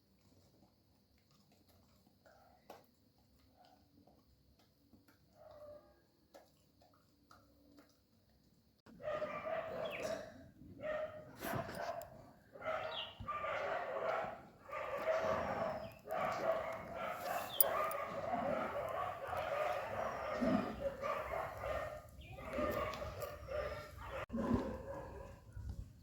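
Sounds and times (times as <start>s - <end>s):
dogs barking and whining: 8.9s - 25.5s.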